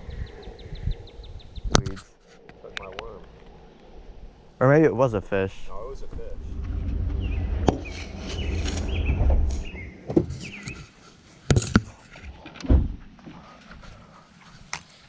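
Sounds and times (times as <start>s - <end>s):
wind rumble on microphone: 0.0s - 2.0s, 2.6s - 11.0s.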